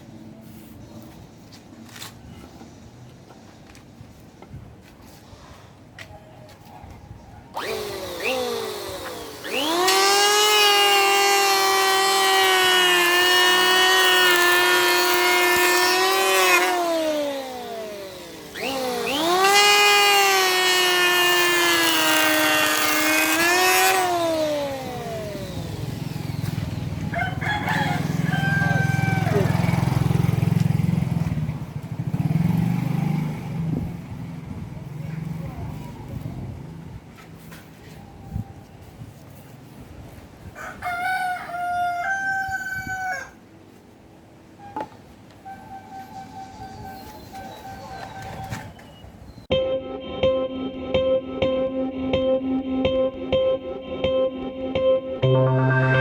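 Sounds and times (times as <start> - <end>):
electric planer motor whining: 7.6 - 27.1
loud crowing call: 27.1 - 29.8, 40.6 - 43.4.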